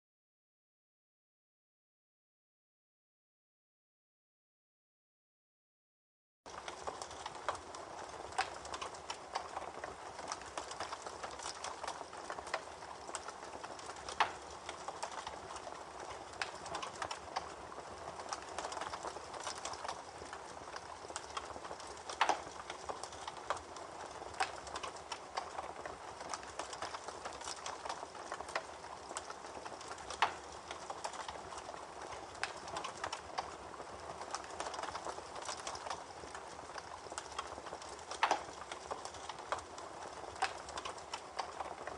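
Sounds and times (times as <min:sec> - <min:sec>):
campfire crackling and popping: 0:06.5 - 0:41.9.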